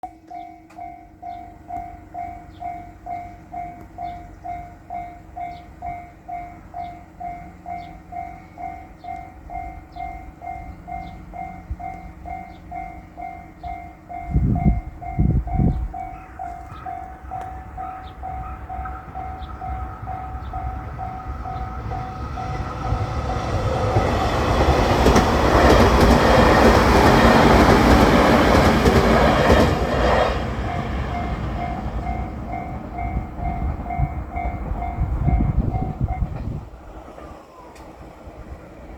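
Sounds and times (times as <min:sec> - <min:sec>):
level crossing warning bell: 0:00.0 - 0:36.6
train passing: 0:00.0 - 0:38.9.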